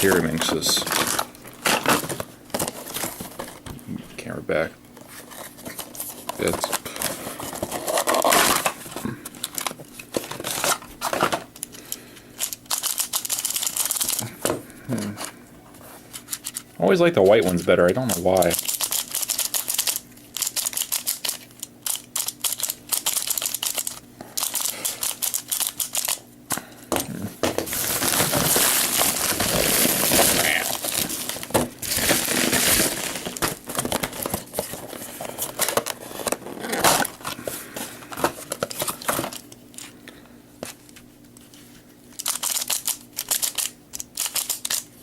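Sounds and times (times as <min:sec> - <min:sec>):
plastic packaging crinkling: 0:00.0 - 0:03.7, 0:05.0 - 0:14.3, 0:27.4 - 0:40.0.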